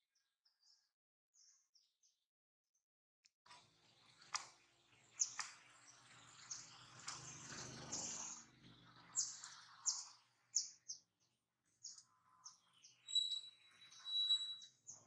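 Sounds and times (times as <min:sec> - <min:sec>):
birds chirping: 0:11.8 - 0:15.0
thin steady whistle: 0:13.0 - 0:14.7.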